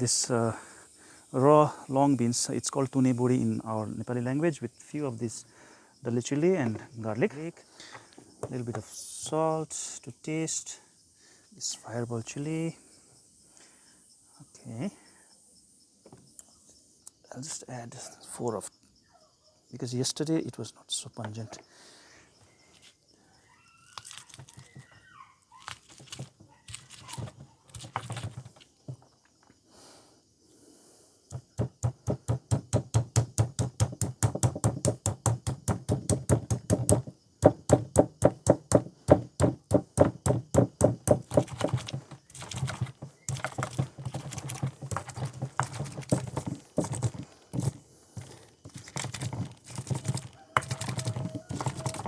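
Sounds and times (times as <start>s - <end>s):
pestle pounding in a mortar: 31.3s - 52.0s.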